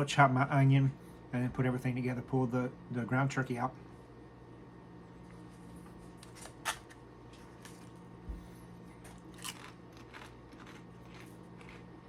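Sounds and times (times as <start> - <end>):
steady low hum: 0.0 - 12.0
person crunching food: 6.0 - 8.2, 8.8 - 12.0.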